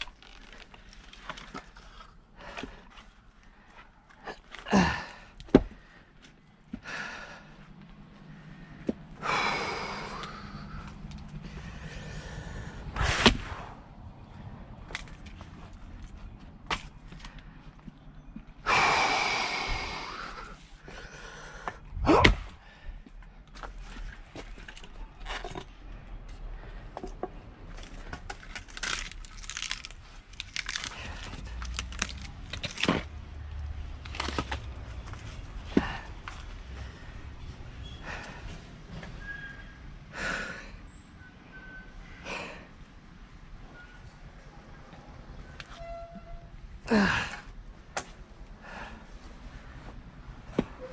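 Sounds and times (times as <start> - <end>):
heavy breathing: 1.7 - 14.8, 18.6 - 23.3, 35.5 - 39.2, 40.0 - 41.0, 41.9 - 43.0, 48.5 - 50.0
axe splitting log: 22.1 - 22.6
firewood and tools clattering: 23.5 - 26.2, 26.8 - 36.9.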